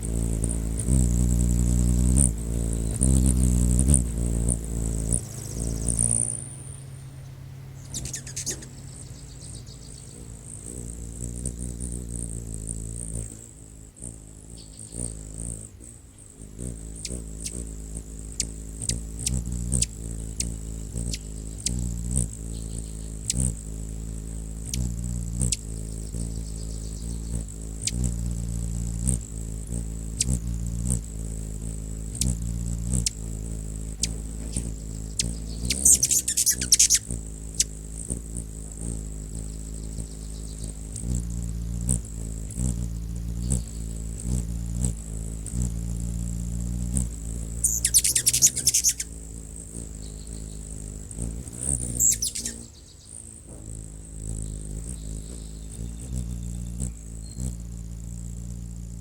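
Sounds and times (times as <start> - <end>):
hummingbird wings buzzing: 0.0 - 59.0
sharp ticks: 18.3 - 23.6, 32.1 - 45.8, 46.8 - 57.6
high rapid chirping: 35.2 - 37.7, 47.6 - 49.2, 51.9 - 52.7.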